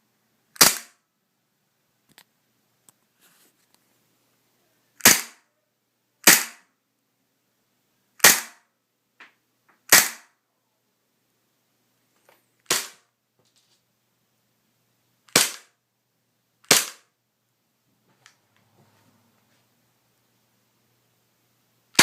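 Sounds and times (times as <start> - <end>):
airsoft gun shots: 0.6 - 1.0, 5.0 - 5.4, 6.2 - 6.7, 8.2 - 8.6, 9.9 - 10.3, 12.7 - 13.0, 15.3 - 15.7, 16.7 - 17.1.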